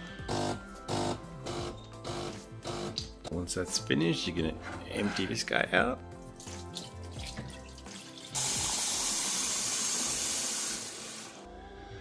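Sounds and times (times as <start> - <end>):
background music: 0.0 - 12.0
water running into sink: 6.2 - 11.4.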